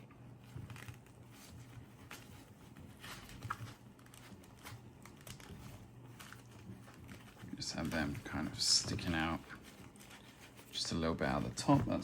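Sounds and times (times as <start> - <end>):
hands rustling a pouch: 0.0 - 12.0
low steady hum: 0.0 - 12.0.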